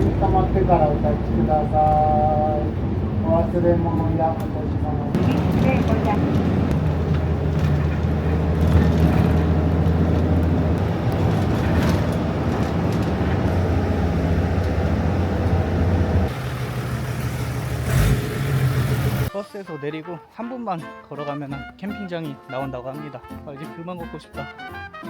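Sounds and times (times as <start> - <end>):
bus engine droning: 0.0 - 19.3
road noise: 0.0 - 19.3.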